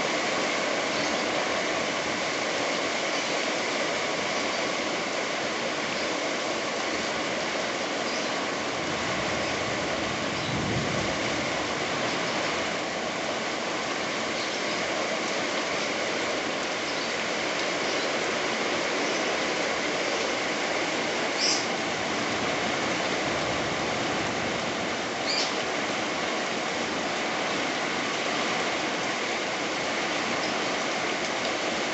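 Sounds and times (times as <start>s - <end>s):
heavy rain pouring: 0.0s - 31.9s
strong wind: 7.1s - 14.4s, 18.4s - 30.0s.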